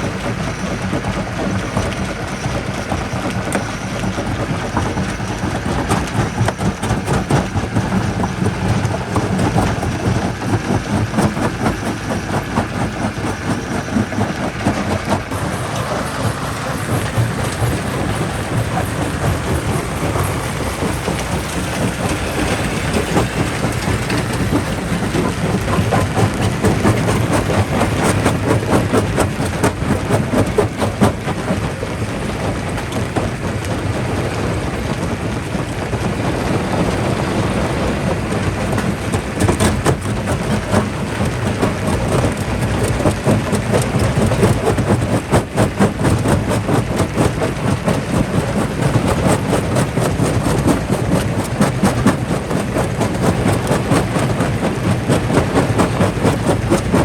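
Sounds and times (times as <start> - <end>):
jaw crusher low drone: 5.1 - 31.2.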